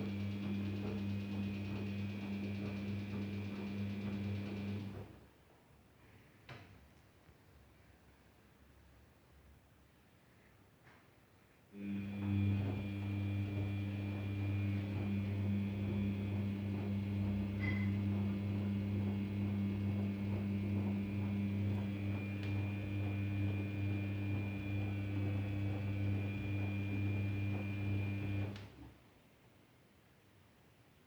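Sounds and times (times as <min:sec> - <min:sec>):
washing machine humming: 0:00.0 - 0:05.2, 0:11.8 - 0:29.0.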